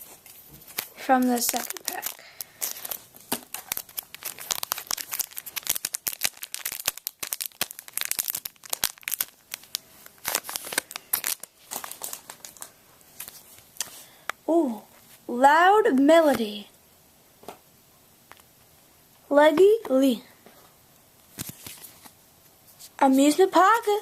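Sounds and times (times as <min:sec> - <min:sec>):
card pack wrapper crinkling: 0:00.2 - 0:14.0, 0:21.3 - 0:22.1.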